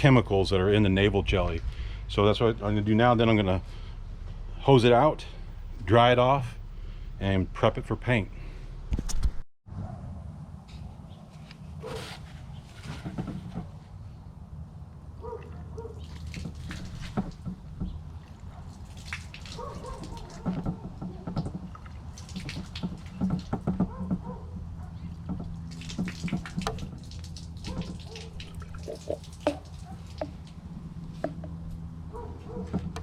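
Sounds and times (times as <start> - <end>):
steady low hum: 0.0 - 9.0
water splashing and dripping: 15.2 - 31.5.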